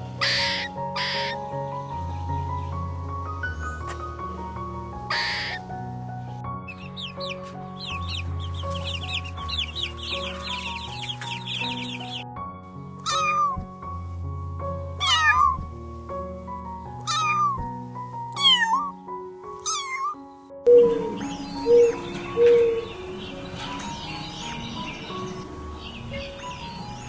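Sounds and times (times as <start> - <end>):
background music: 0.0 - 27.0
cat meowing: 5.1 - 5.6, 13.0 - 13.7, 15.0 - 15.7, 17.0 - 17.7, 18.4 - 19.0, 19.6 - 20.2
rapid high chirping: 5.1 - 5.6, 6.7 - 12.2, 13.0 - 14.0, 15.0 - 15.8, 16.9 - 19.0, 19.6 - 20.2, 21.2 - 22.0, 23.7 - 25.0, 26.3 - 27.0.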